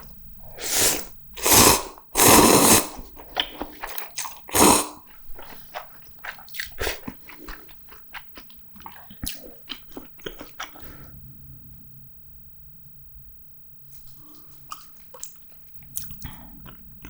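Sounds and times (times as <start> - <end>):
wet mouth clicks: 0.6 - 11.0, 14.1 - 16.8
chewing and biting: 1.4 - 11.1.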